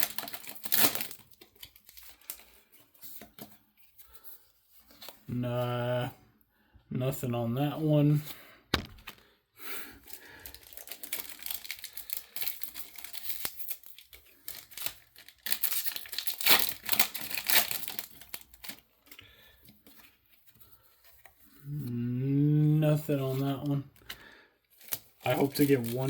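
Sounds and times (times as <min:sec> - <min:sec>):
foil pack tearing and crinkling: 0:00.0 - 0:02.8, 0:10.0 - 0:20.0, 0:24.8 - 0:26.0.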